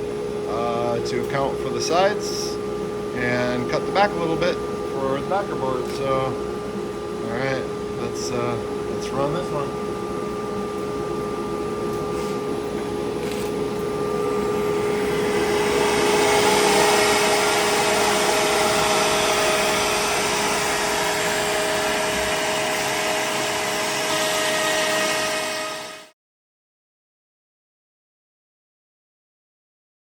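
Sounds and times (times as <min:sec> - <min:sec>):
higher machine whine: 0:00.0 - 0:26.2
router spindle whine: 0:07.1 - 0:26.1.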